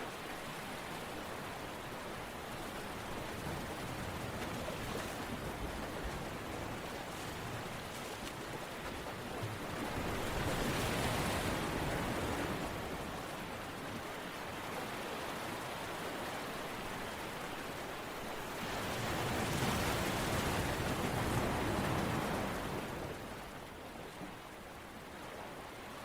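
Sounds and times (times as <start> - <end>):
rushing water: 0.0 - 26.0.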